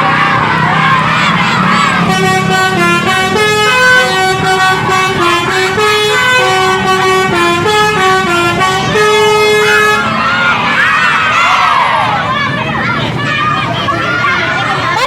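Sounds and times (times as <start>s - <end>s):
musical air horn tune: 2.0s - 10.2s.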